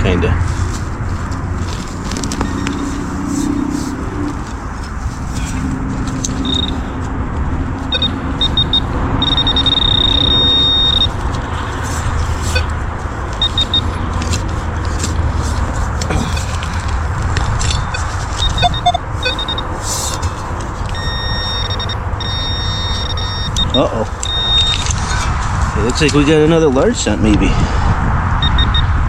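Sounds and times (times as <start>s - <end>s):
metal detector beeping: 2.4s - 3.8s, 6.2s - 7.0s, 7.9s - 11.2s, 12.4s - 14.0s, 17.7s - 25.0s, 28.4s - 28.9s
scrapes and clicks: 11.2s - 21.8s.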